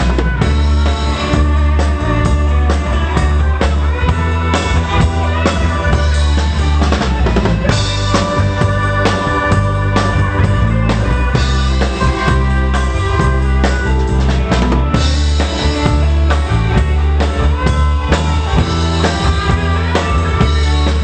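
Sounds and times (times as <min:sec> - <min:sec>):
live pop-rock band playing: 0:00.0 - 0:21.0.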